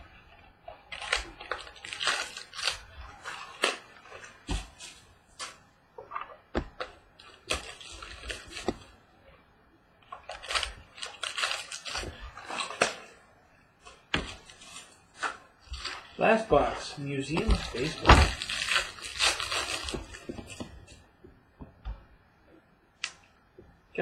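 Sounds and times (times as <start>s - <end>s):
packaging rustling and tearing: 0.0s - 9.0s, 10.1s - 13.2s, 13.8s - 21.0s.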